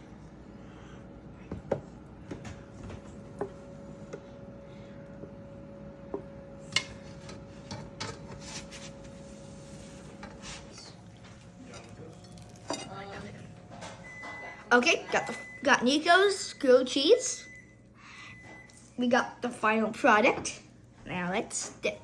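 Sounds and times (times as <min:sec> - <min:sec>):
faint steady hum: 0:00.0 - 0:22.0
utensils and dishes clinking: 0:06.6 - 0:08.4, 0:10.2 - 0:15.6.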